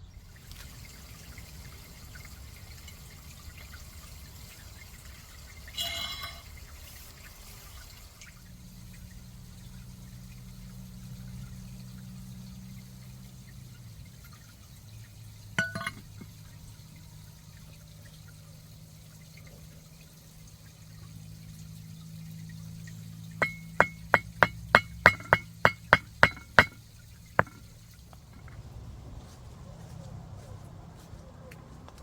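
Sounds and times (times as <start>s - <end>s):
low steady hum: 8.3s - 17.2s, 21.0s - 28.7s
glassware clinking: 15.6s - 16.3s, 23.4s - 26.8s, 27.4s - 27.6s.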